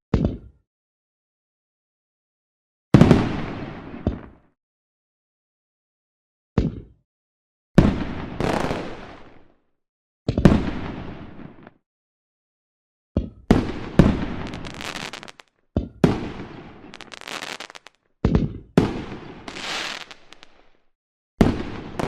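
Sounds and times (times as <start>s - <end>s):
fireworks bursting: 7.8s - 9.4s, 13.5s - 18.0s, 18.8s - 20.8s
fireworks crackling: 8.4s - 9.3s, 13.7s - 15.5s, 16.2s - 18.0s, 19.0s - 20.7s.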